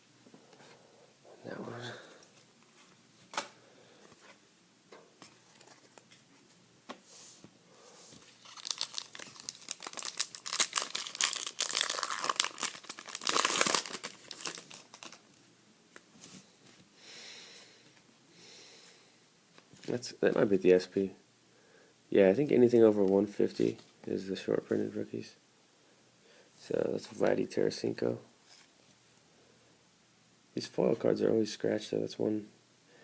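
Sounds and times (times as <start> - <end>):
foil wrapper crinkling and tearing: 8.4 - 15.2.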